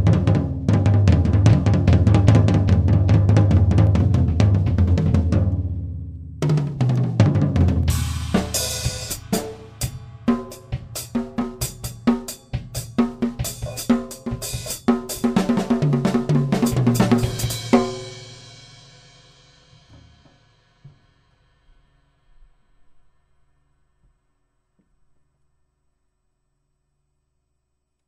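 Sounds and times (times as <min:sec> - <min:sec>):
drum kit playing: 0:00.0 - 0:21.0.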